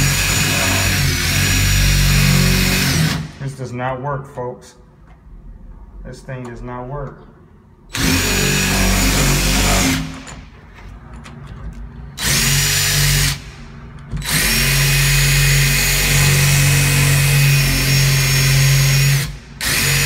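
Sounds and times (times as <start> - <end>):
drill motor spinning: 0.0 - 3.4, 7.9 - 10.3, 12.2 - 13.6, 14.2 - 20.0.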